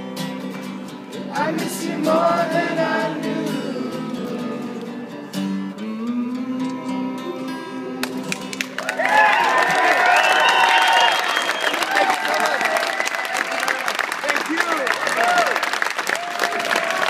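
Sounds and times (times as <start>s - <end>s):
acoustic guitar strumming: 0.0s - 8.8s
person singing wordless line: 1.3s - 8.5s.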